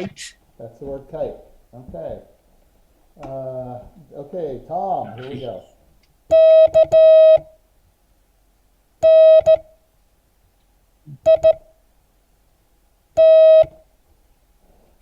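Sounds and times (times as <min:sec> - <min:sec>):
morse code tone: 0:06.3 - 0:07.4, 0:09.0 - 0:09.6, 0:11.2 - 0:11.6, 0:13.2 - 0:13.7.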